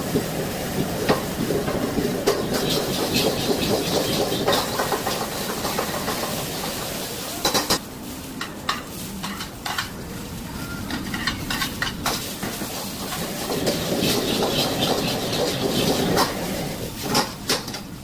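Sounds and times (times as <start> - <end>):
rice sizzling in a pan: 0.0 - 17.6
metal spatula scraping a pan: 2.3 - 6.2, 13.1 - 16.7.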